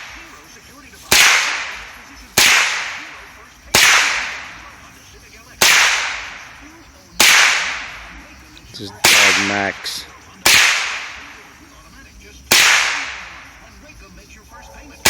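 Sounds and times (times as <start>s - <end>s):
rifle shots with echo: 0.0s - 0.4s, 1.1s - 4.9s, 5.5s - 8.1s, 9.0s - 9.8s, 10.4s - 11.5s, 12.5s - 13.5s.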